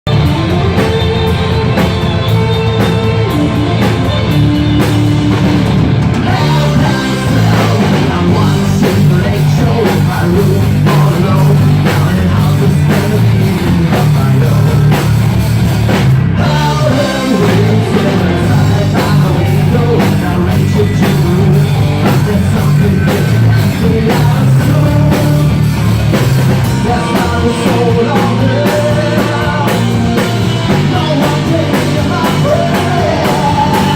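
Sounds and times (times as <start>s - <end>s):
live rock band playing: 0.0s - 33.9s.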